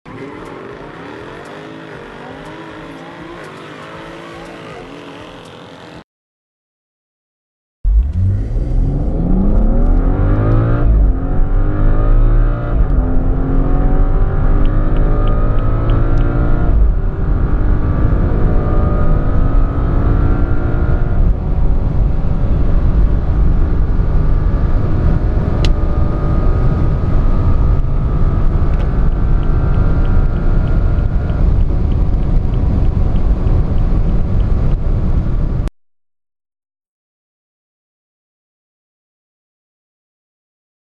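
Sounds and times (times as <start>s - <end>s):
car engine accelerating: 0.1s - 6.0s, 7.9s - 35.7s
road and wind noise: 0.1s - 6.0s, 7.9s - 35.7s.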